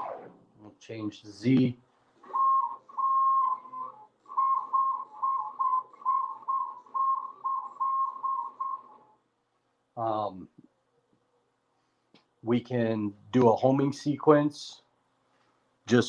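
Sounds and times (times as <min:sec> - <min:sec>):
stepper motor whining: 0:00.0 - 0:00.4.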